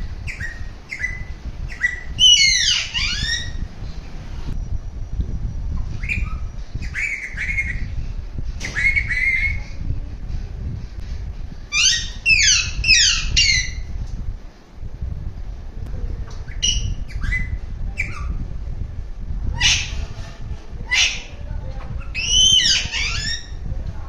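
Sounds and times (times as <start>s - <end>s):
low rumble: 0.0s - 24.0s
parakeet squawking: 0.2s - 3.6s, 5.8s - 8.0s, 8.6s - 9.7s, 11.7s - 13.9s, 16.5s - 18.4s, 19.5s - 20.2s, 20.8s - 23.6s.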